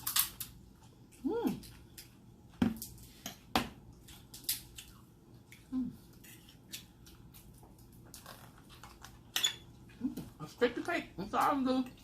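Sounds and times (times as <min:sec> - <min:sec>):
food crunching while chewed: 0:04.0 - 0:10.0.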